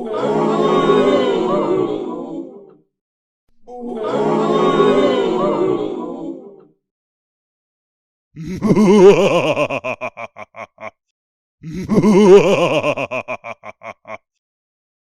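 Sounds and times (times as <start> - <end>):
mocking laugh: 8.4 - 11.0, 11.6 - 14.3.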